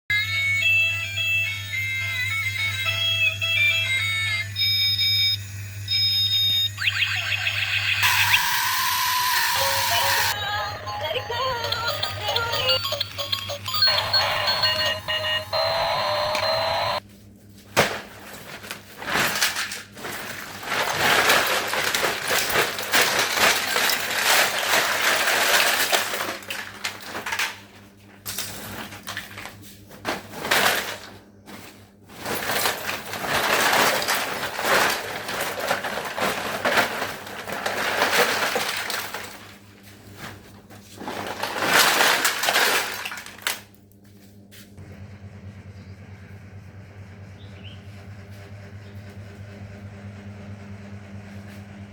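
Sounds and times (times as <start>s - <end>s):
plastic toys clattering: 17.8s - 43.8s.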